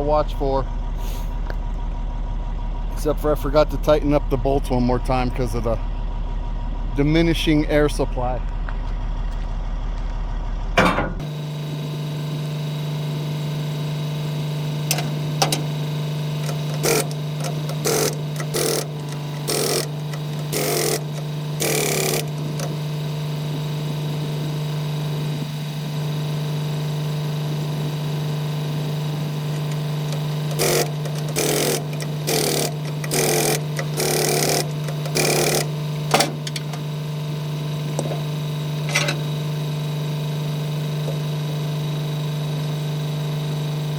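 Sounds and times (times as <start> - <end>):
engine hum: 0.0 - 43.4
pneumatic impact wrench bursts: 16.4 - 22.9, 29.5 - 36.9.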